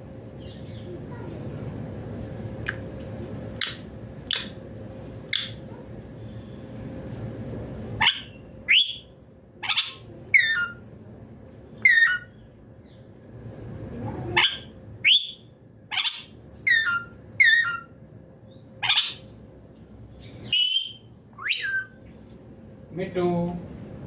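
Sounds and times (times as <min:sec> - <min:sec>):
parakeet screeching: 0:08.0 - 0:10.8, 0:11.8 - 0:12.4, 0:14.4 - 0:18.0, 0:18.8 - 0:19.3, 0:20.3 - 0:22.0.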